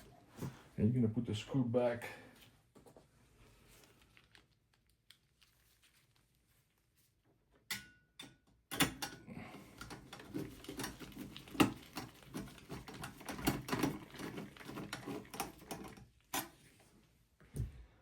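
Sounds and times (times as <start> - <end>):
clicks and taps of computer parts: 7.7 - 9.2.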